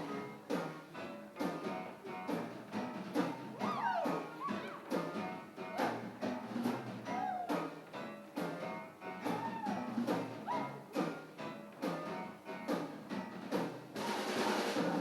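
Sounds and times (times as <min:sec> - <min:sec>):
live band playing: 0:00.0 - 0:15.0
drum beat: 0:02.3 - 0:08.6, 0:09.3 - 0:12.1, 0:12.7 - 0:15.0.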